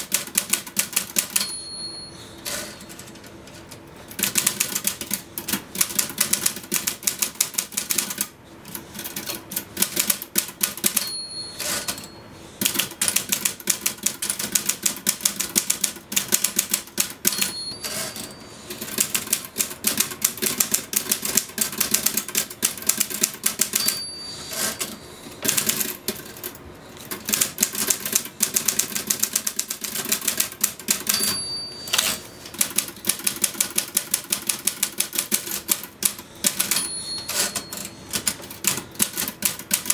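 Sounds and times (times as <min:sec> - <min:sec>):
typewriter keys clattering: 0:00.0 - 0:01.5, 0:02.5 - 0:12.0, 0:12.6 - 0:39.9
typewriter bell ding: 0:01.1 - 0:03.1, 0:10.7 - 0:12.2, 0:17.0 - 0:18.8, 0:23.5 - 0:25.1, 0:30.7 - 0:33.0, 0:36.4 - 0:38.4
typewriter carriage return: 0:02.4 - 0:39.9.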